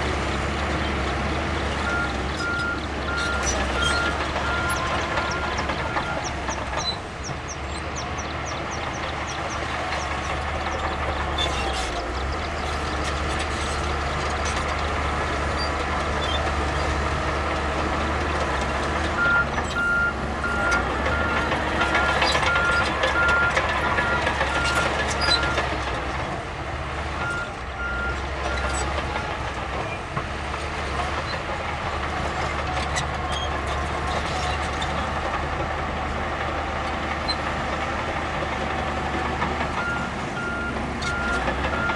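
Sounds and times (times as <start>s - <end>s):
heavy diesel machinery running: 0.0s - 41.9s
reversing alarm beeps: 19.2s - 25.6s.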